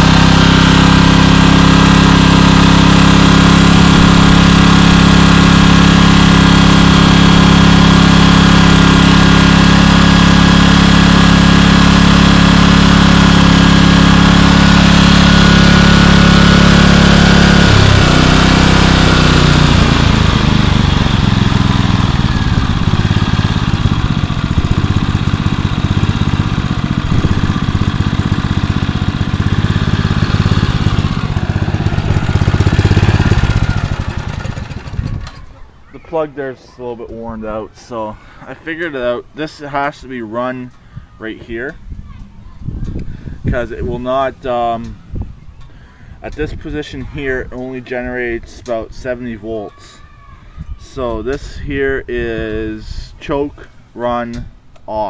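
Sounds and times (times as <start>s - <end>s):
generator engine running: 0.0s - 36.7s.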